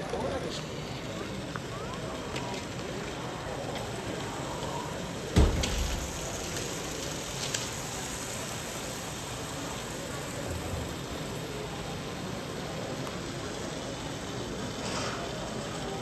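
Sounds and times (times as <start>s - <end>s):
loud thump: 5.4s - 7.2s.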